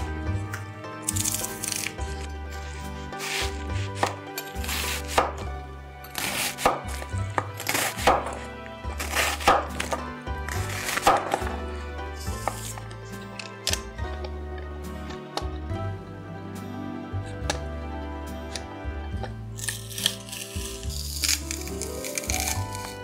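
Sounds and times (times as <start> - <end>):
background music with bass: 0.0 - 23.0
crunching fried food: 1.0 - 5.3, 6.2 - 11.6, 19.3 - 23.0.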